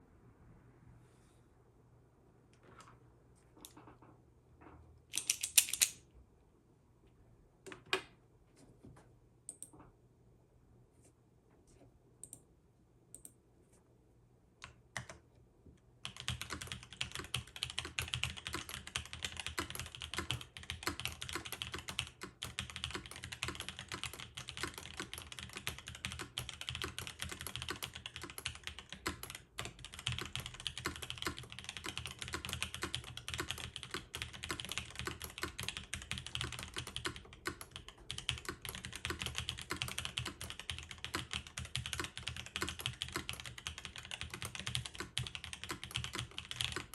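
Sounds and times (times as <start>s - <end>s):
deep mechanical keyboard typing: 14.6s - 15.2s, 16.0s - 46.9s.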